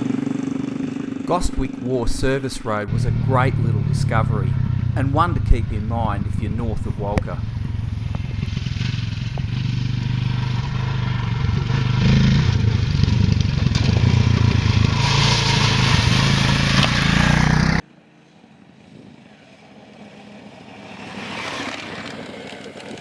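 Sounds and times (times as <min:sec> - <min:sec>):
motorcycle engine running: 0:00.0 - 0:17.8
wind and road noise: 0:00.0 - 0:17.8, 0:18.4 - 0:23.0.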